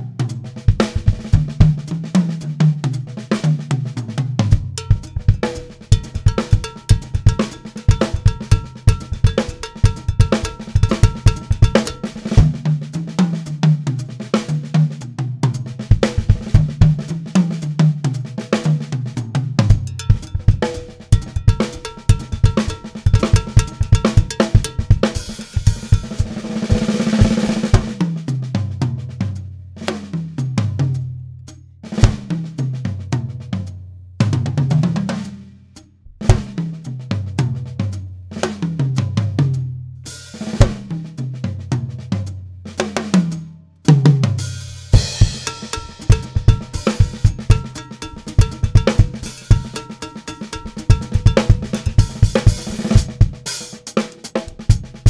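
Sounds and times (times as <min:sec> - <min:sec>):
snare and bass drum strokes: 0:00.0 - 0:55.0
tom drum runs: 0:04.5 - 0:12.6, 0:19.6 - 0:28.0, 0:43.9 - 0:55.0
crash cymbal accents: 0:44.5 - 0:53.0
cymbal wash: 0:44.5 - 0:53.2.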